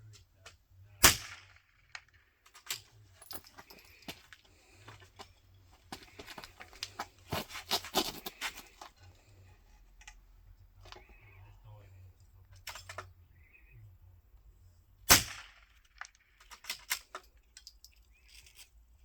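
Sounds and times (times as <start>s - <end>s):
rifle gear clicking and rattling: 1.8s - 10.2s, 15.7s - 18.8s.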